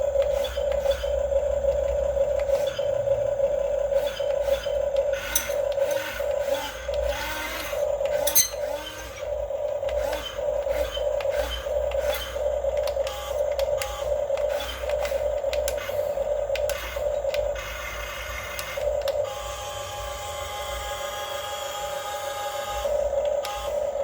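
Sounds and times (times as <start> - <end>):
electric motors whining: 0.0 - 24.0
sharp clicks and knocks: 4.9 - 6.0.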